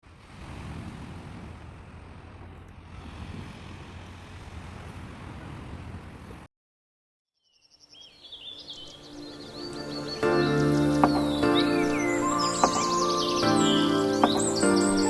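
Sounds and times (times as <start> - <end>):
high chirping tones: 8.6 - 15.0.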